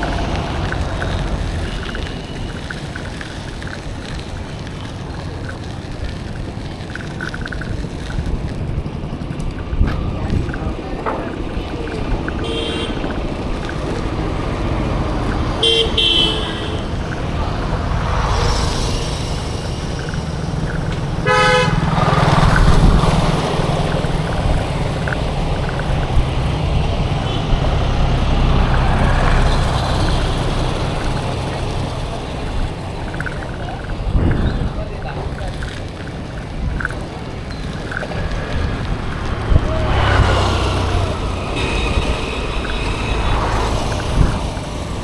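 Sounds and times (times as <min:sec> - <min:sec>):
road traffic rumble: 0:00.0 - 0:45.0
vehicle horn toots: 0:12.4 - 0:13.1, 0:15.6 - 0:16.9, 0:21.2 - 0:21.9, 0:41.5 - 0:43.7.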